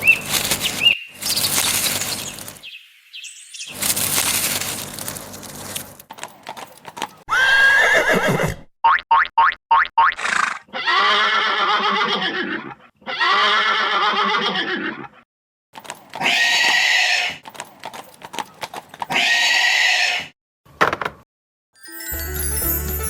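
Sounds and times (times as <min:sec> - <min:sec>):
horse whinnying: 0:07.3 - 0:08.7, 0:10.2 - 0:15.2, 0:16.2 - 0:17.4, 0:19.1 - 0:20.3.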